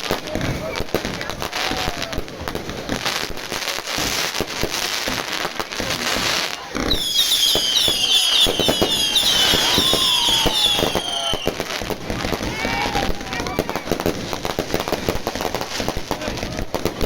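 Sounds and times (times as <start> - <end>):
fireworks crackling and banging: 0.0 - 17.0
whistling fireworks: 0.0 - 17.0.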